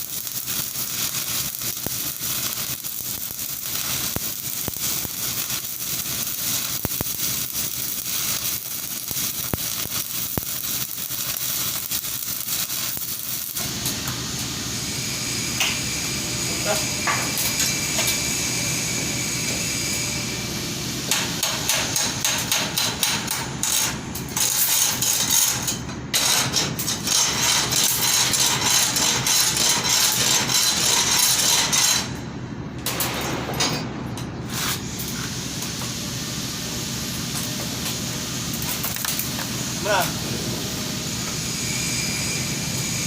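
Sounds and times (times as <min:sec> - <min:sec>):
welding crackling: 0:00.0 - 0:14.6, 0:21.2 - 0:32.2, 0:37.1 - 0:42.4.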